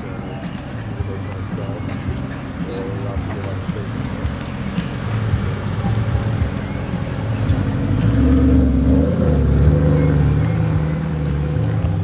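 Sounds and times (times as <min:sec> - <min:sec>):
car engine passing by: 0:02.4 - 0:12.0.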